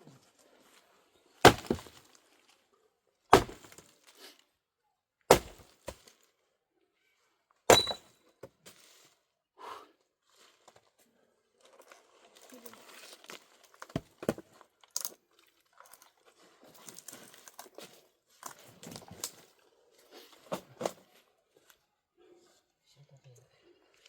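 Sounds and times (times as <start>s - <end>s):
firewood cracking: 1.4s - 2.2s, 3.3s - 3.9s, 5.3s - 6.1s.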